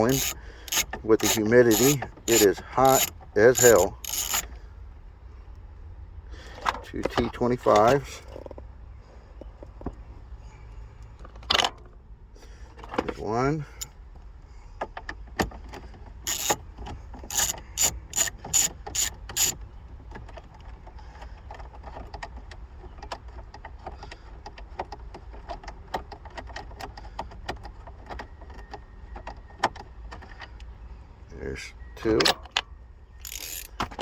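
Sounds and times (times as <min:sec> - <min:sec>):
ratcheting tool clicking: 0:00.0 - 0:04.5, 0:16.3 - 0:16.6, 0:17.2 - 0:19.6, 0:33.2 - 0:33.8.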